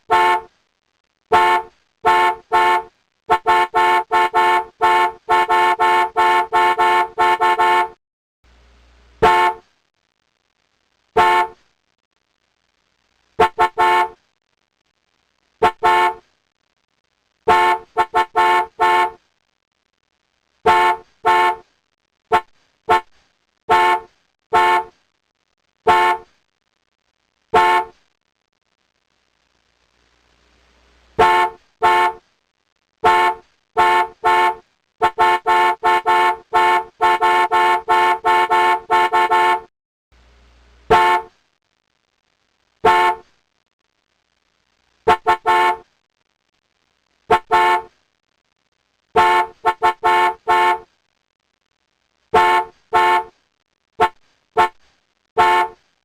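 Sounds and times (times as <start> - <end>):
car horn honking: 0.1 - 0.5, 1.3 - 8.0, 9.2 - 9.6, 11.2 - 11.6, 13.4 - 14.2, 15.6 - 16.2, 17.5 - 19.2, 20.6 - 21.6, 22.3 - 23.1, 23.7 - 24.9, 25.9 - 26.2, 27.6 - 27.9, 31.2 - 32.2, 33.0 - 39.7, 40.9 - 41.3, 42.8 - 43.2, 45.1 - 45.8, 47.3 - 47.9, 49.2 - 50.8, 52.3 - 53.3, 54.0 - 54.8, 55.4 - 55.8.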